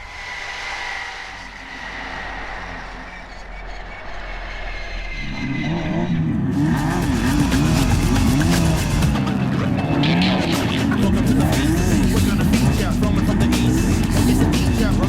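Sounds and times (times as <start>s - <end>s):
race vehicle engine revving: 5.2s - 15.0s.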